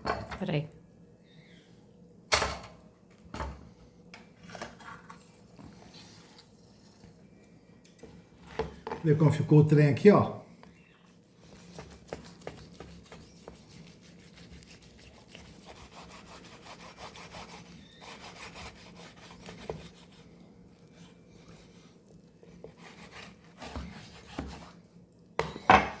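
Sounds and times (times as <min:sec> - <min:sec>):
knife sawing through meat: 0:11.3 - 0:20.3, 0:22.6 - 0:24.8.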